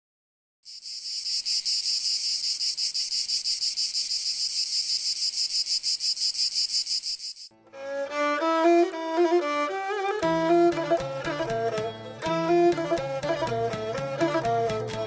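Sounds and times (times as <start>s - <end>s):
insects chirring: 0.6s - 7.5s.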